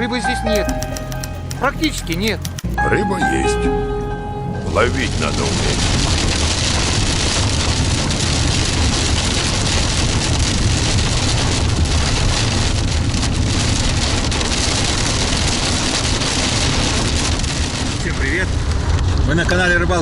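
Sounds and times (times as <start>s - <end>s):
rain: 4.6s - 20.0s
wind buffeting microphone: 5.7s - 20.0s.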